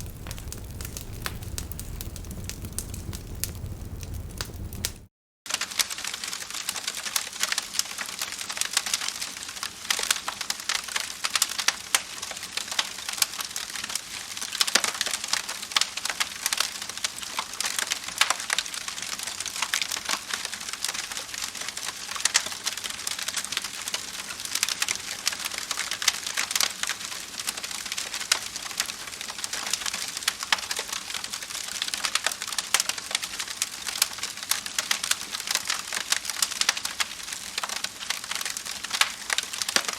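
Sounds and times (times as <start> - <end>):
campfire crackling and popping: 0.0 - 5.1, 17.0 - 39.9
soft steady fire hiss: 0.0 - 39.9.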